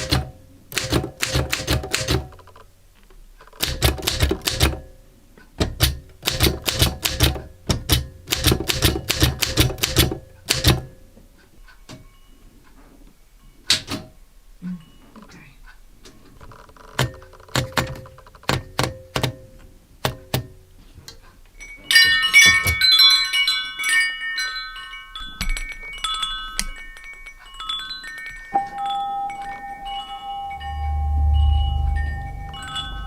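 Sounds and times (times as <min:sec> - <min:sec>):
wind chimes jangling: 0:11.5 - 0:13.7, 0:14.6 - 0:15.4, 0:21.6 - 0:33.0
steady high tone: 0:28.5 - 0:33.0.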